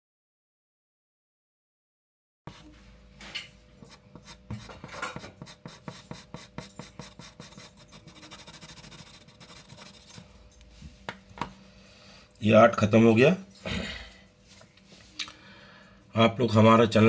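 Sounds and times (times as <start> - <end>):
pencil scratching on paper: 3.9 - 10.4.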